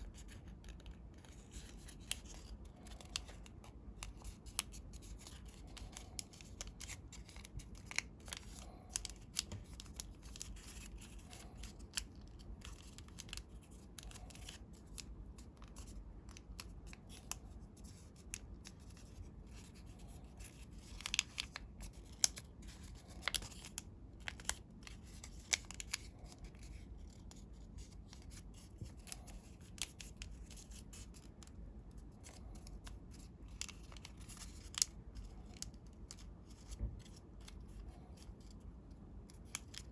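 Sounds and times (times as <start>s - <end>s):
paper being folded and creased: 0.0s - 38.6s.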